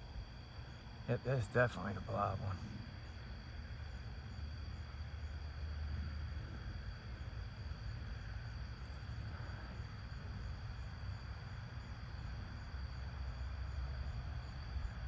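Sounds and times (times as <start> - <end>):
high-pitched whine: 1.1 - 3.0.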